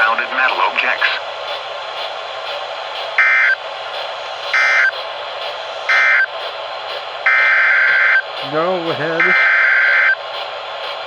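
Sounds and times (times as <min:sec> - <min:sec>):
radio hiss: 0:00.0 - 0:01.3, 0:03.2 - 0:03.6, 0:07.3 - 0:10.2
harsh digital data bursts: 0:03.2 - 0:03.6, 0:04.5 - 0:05.0, 0:05.9 - 0:06.3, 0:07.3 - 0:10.2.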